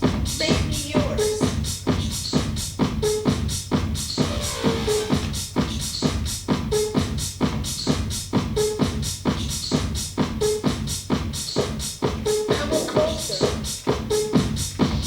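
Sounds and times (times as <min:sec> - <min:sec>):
electronic dance music: 0:00.0 - 0:15.0
fast drum machine beat: 0:00.0 - 0:15.0.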